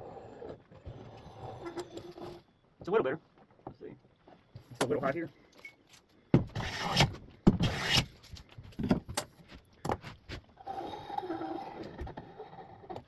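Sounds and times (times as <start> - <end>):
hand plane shaving wood: 6.6 - 8.0
scraping rub: 6.6 - 8.3.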